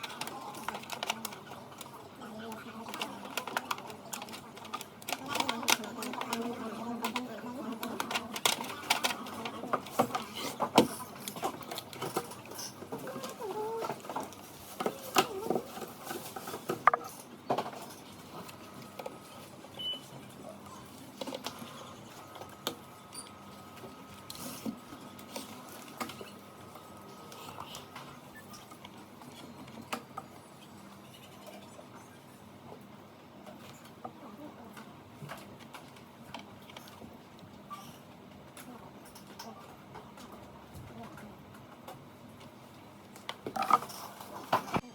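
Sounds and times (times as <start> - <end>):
hands and tools handling parts: 9.8 - 18.6.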